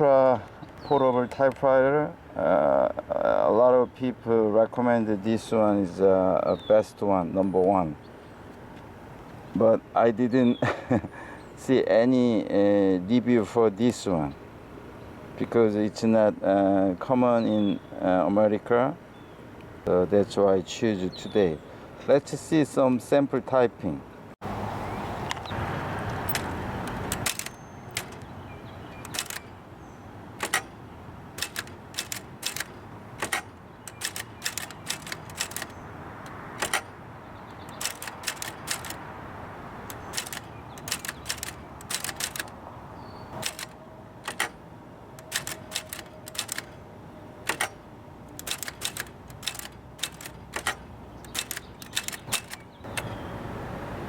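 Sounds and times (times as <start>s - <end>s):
typewriter keys clacking: 26.3s - 28.3s, 29.0s - 29.6s, 30.4s - 30.8s, 31.4s - 37.0s, 37.7s - 39.0s, 39.9s - 42.6s, 43.4s - 44.6s, 45.2s - 46.8s, 47.4s - 53.1s.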